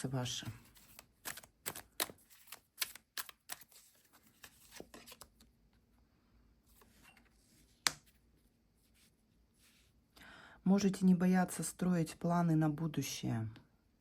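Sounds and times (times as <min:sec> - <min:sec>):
cards rustling and flicking: 0:00.4 - 0:05.5.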